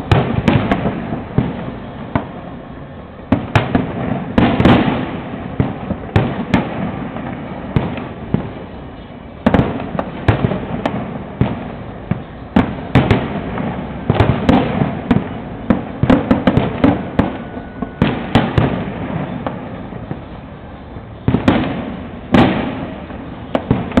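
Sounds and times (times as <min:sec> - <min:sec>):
fireworks bangs and pops: 0:00.0 - 0:24.0
fireworks crackling: 0:00.0 - 0:24.0.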